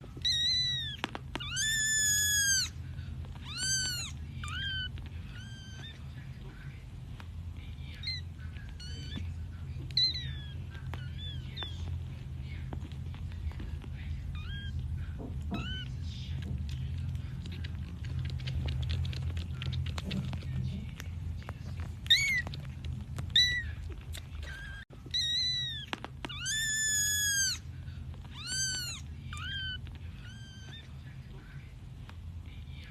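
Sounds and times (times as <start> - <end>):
steady low hum: 0.0 - 32.9
kitten meowing: 0.1 - 6.2, 8.0 - 12.0, 14.3 - 14.9, 15.5 - 16.0, 22.0 - 31.0.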